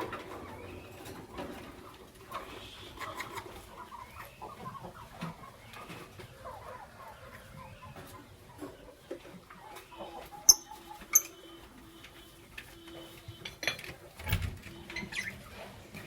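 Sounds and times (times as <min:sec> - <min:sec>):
lovebirds chirping: 0:02.4 - 0:13.6, 0:14.7 - 0:16.0.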